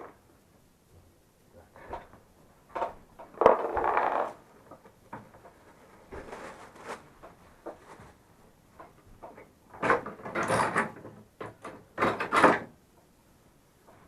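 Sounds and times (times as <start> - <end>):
scraping and rustling: 5.5 - 8.3.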